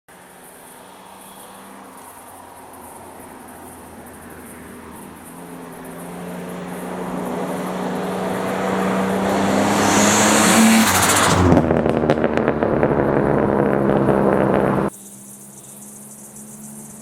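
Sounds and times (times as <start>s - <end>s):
car engine under load: 2.9s - 14.9s.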